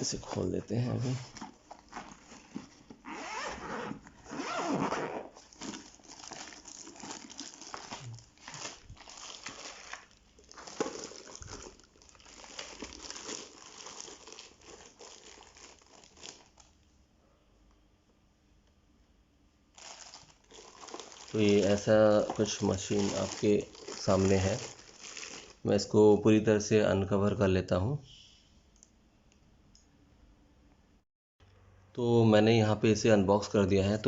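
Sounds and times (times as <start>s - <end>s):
pouch rustling and crinkling: 0.3s - 16.7s, 19.8s - 25.6s
zipper unzipping: 3.0s - 5.4s.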